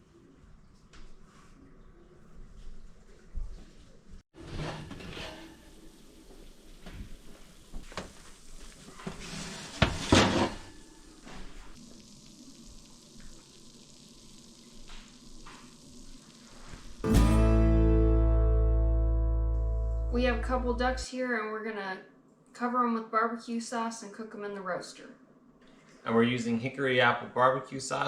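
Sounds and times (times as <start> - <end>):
faint hiss: 10.5 - 17.2.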